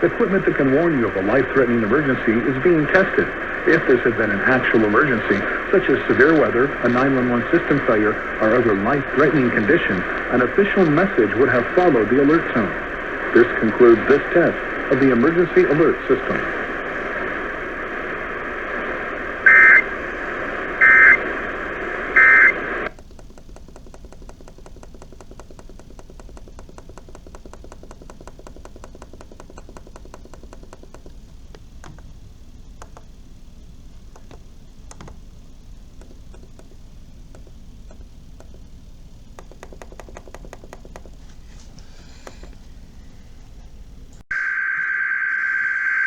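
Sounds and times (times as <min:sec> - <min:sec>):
faint steady hiss: 0:00.0 - 0:46.0
warbling digital data tones: 0:19.4 - 0:19.8, 0:44.3 - 0:46.0
fine clicking: 0:22.5 - 0:44.2.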